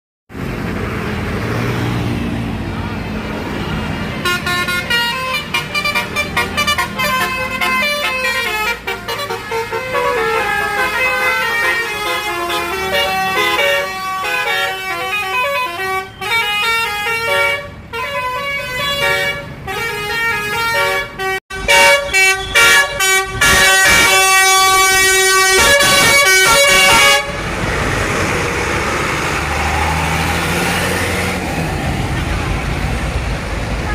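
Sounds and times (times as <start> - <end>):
musical vehicle air horn: 4.2 - 27.4.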